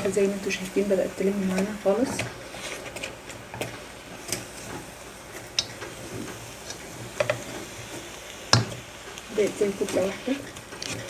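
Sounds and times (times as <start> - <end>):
utensil working sticky dough: 0.0 - 11.0
utensil knocking against pot: 8.5 - 8.8.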